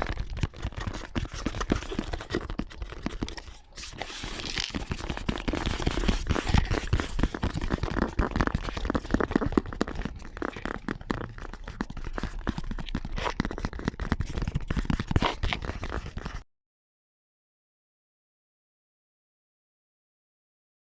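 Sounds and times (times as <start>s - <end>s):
crinkly scratching: 0.0s - 16.4s.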